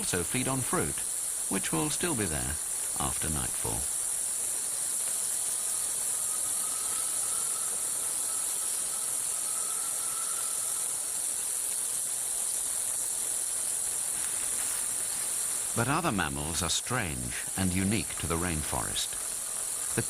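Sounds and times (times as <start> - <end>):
insect chorus drone: 0.0 - 20.0
faint thin steady tone: 5.0 - 13.6.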